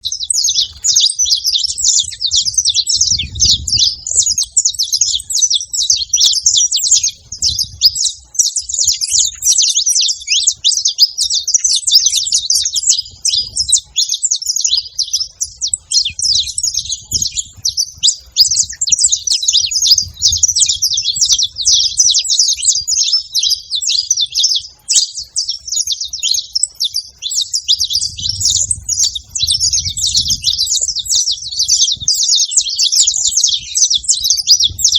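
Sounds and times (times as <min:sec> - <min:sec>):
finches chirping and singing: 0:00.0 - 0:34.9.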